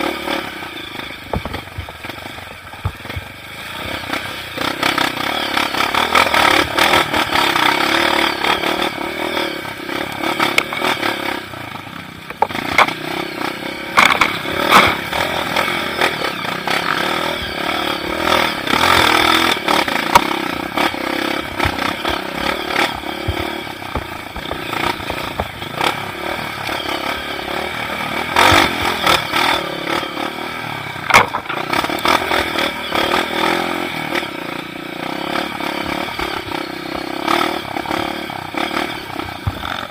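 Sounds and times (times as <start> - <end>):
motorcycle engine running: 0.0 - 39.9
sharp knocks from bumps: 1.3 - 3.4, 12.3 - 13.0, 14.0 - 15.0, 31.0 - 31.9, 39.3 - 39.9.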